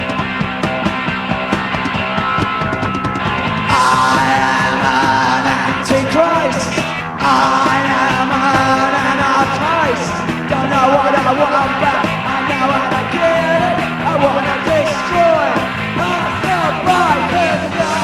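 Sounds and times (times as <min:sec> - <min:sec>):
punk rock band playing: 0:00.0 - 0:18.0
lead vocal singing: 0:03.6 - 0:18.0.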